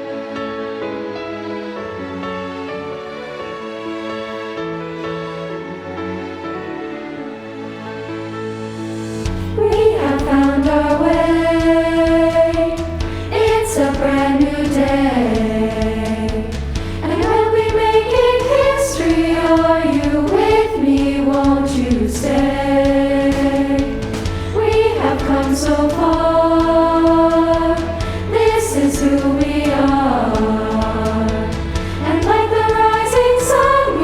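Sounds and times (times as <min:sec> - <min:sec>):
instrumental accompaniment: 0:00.0 - 0:34.0
girls' choir singing: 0:09.2 - 0:34.0.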